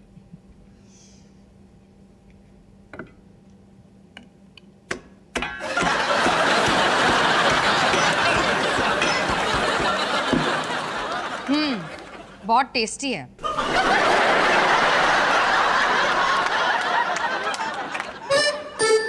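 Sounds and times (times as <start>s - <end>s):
studio audience laughing: 5.6s - 12.5s, 13.4s - 18.5s.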